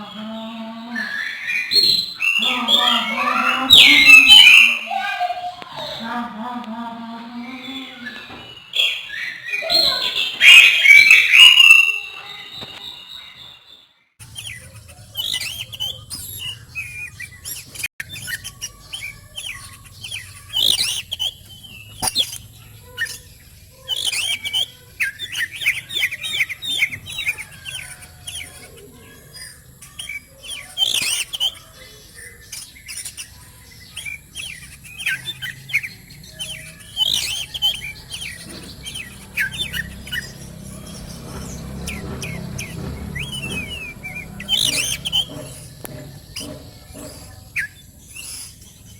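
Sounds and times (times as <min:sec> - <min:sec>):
bird singing chirps and whistles: 0:00.0 - 0:06.3, 0:07.4 - 0:48.9.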